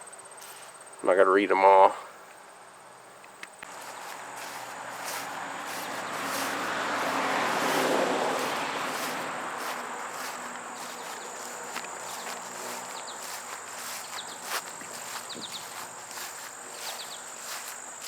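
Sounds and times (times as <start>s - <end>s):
faint footsteps: 3.2s - 18.0s
high insect buzz: 3.5s - 18.0s
vehicle tyre hiss passing: 3.6s - 18.0s
bird chirps: 8.5s - 17.6s.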